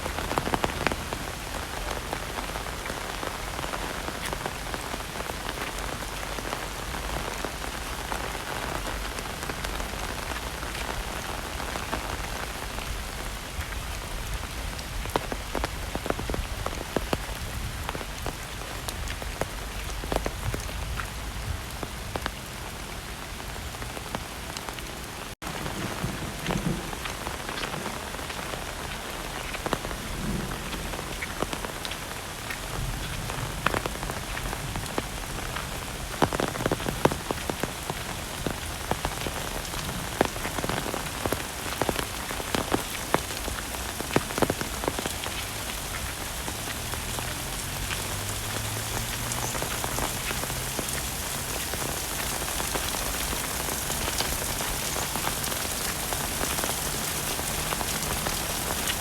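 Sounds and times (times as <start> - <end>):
heavy rain falling: 0.0 - 59.0
close raindrop hits: 24.0 - 59.0.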